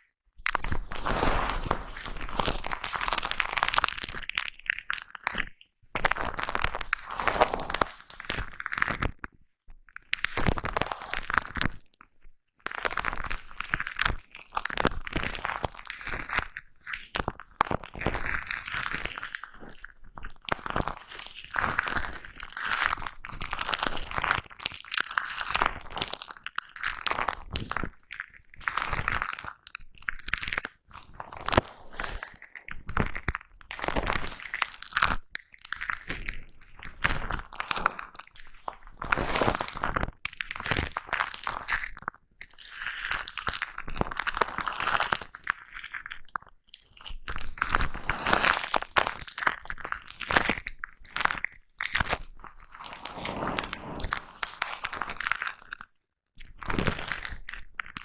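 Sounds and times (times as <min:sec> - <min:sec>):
brushing foam-covered microphone: 0:00.7 - 0:02.6, 0:47.8 - 0:48.7, 0:52.6 - 0:55.5.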